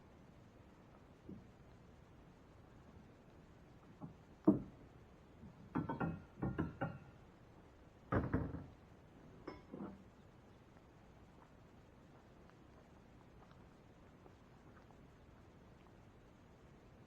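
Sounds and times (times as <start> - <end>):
hard objects knocking and clunking: 4.0 - 4.8, 5.4 - 7.1, 8.1 - 8.8.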